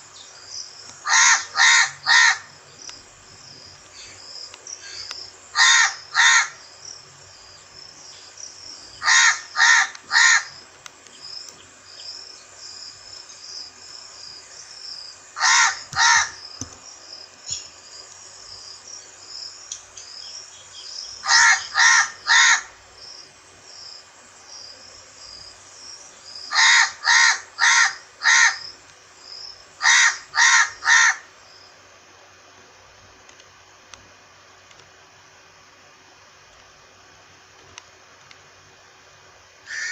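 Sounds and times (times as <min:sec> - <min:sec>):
crow cawing: 0:01.0 - 0:02.5, 0:04.8 - 0:06.6, 0:09.0 - 0:10.6, 0:15.4 - 0:16.4, 0:21.2 - 0:22.8, 0:26.5 - 0:28.6, 0:29.8 - 0:31.3, 0:39.7 - 0:39.9.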